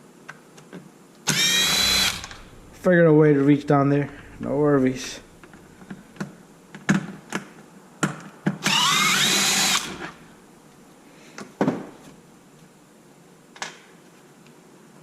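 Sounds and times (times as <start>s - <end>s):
power driver whine: 1.3s - 6.7s, 8.6s - 10.8s.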